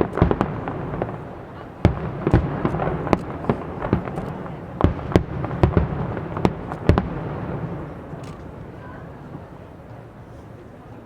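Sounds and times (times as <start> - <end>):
firework bangs: 0.0 - 9.5
continuous fireworks din: 0.0 - 11.0.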